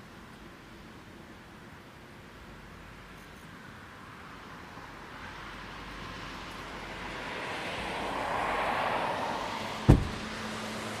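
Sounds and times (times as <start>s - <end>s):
vehicle noise: 0.0s - 11.0s
sharp bang: 9.9s - 10.3s.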